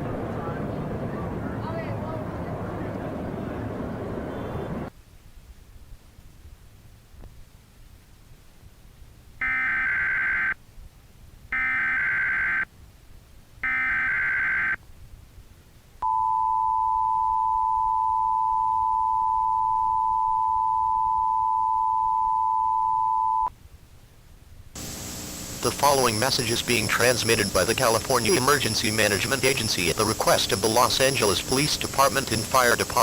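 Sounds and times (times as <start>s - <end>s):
two-tone attention signal: 16.0s - 23.5s
screechy digital header bursts: 24.8s - 33.0s.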